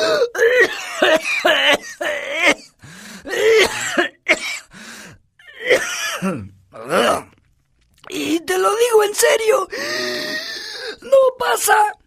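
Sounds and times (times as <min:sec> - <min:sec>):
person coughing: 0:00.0 - 0:04.7, 0:05.6 - 0:06.5.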